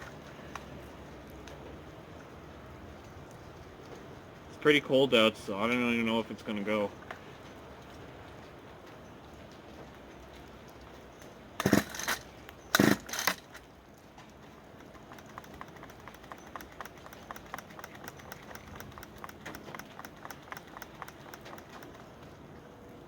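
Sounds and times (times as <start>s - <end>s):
string trimmer pull-cord yanks: 11.6s - 13.6s, 14.8s - 22.0s
faint fast ticking: 14.7s - 22.4s.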